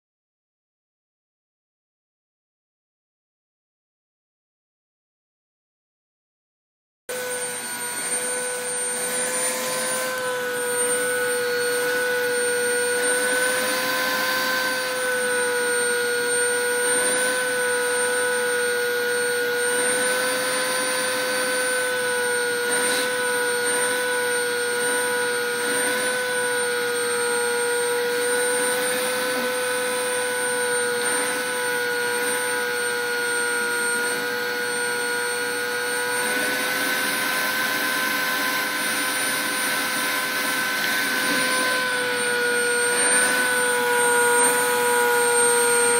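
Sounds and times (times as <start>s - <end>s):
vacuum cleaner running: 7.1s - 45.9s.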